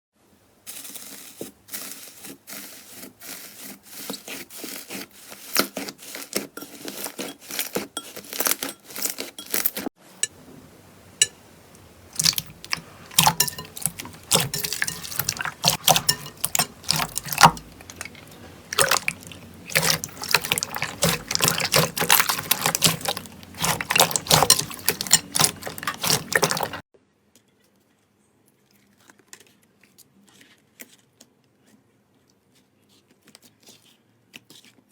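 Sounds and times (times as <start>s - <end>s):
slime squished by hand: 12.1s - 26.8s.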